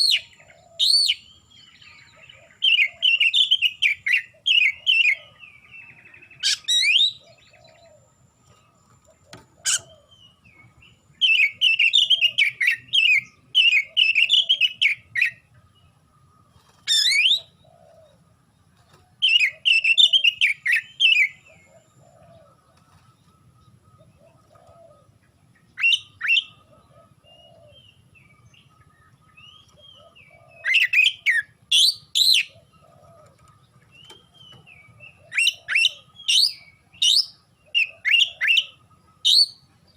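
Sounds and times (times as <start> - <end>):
bird singing whistled phrases: 6.4 - 7.2, 11.2 - 15.4, 25.8 - 26.6, 34.8 - 39.6.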